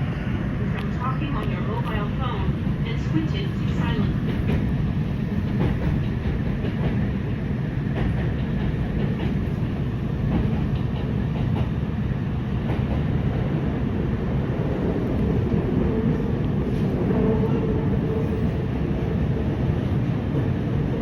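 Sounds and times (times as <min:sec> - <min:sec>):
clickety-clack from track: 0:00.0 - 0:13.7
train wheels rumbling on rails: 0:00.0 - 0:21.0.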